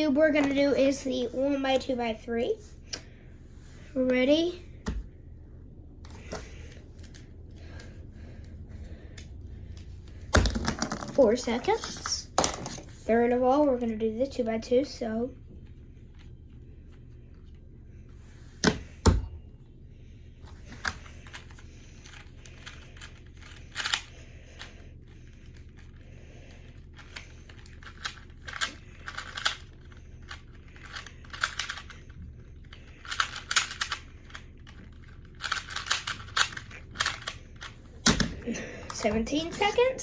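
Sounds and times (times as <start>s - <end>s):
puzzle cube plastic clicks: 20.7s - 25.9s, 26.9s - 39.5s.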